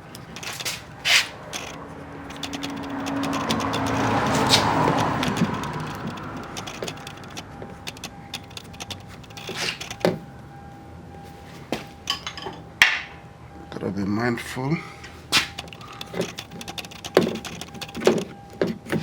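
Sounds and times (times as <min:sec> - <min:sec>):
door handle parts clicking: 0:00.0 - 0:10.2, 0:15.4 - 0:19.0.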